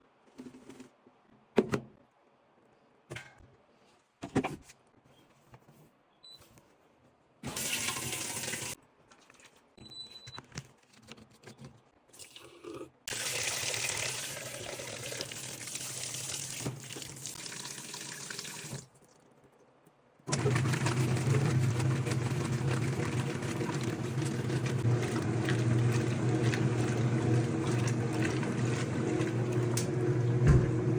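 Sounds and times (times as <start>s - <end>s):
liquid pouring into washing machine: 7.5s - 8.8s, 13.1s - 18.9s, 20.3s - 30.9s.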